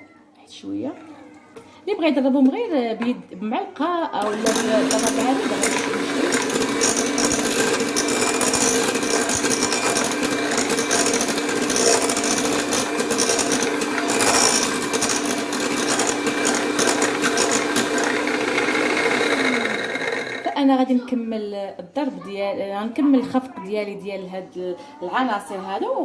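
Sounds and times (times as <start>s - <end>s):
beaters clattering against bowl: 4.2s - 20.4s
electric mixer running: 4.2s - 20.6s.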